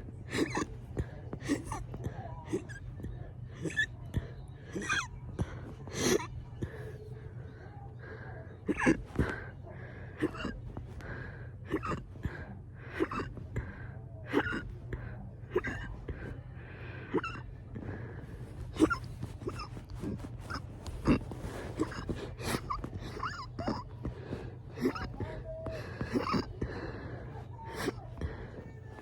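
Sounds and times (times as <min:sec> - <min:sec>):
person hiccuping: 0:00.3 - 0:00.8, 0:08.7 - 0:09.3, 0:10.2 - 0:10.6, 0:11.7 - 0:12.1, 0:13.0 - 0:13.3, 0:14.3 - 0:14.7, 0:15.5 - 0:16.0, 0:17.1 - 0:17.5, 0:18.8 - 0:23.9, 0:24.8 - 0:26.6.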